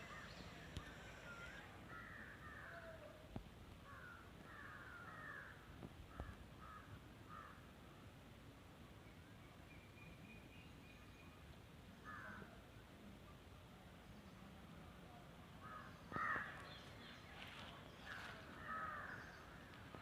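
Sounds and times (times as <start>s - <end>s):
crows cawing: 0.0s - 3.0s, 3.9s - 7.6s, 12.1s - 12.4s, 15.6s - 16.6s, 18.1s - 19.4s.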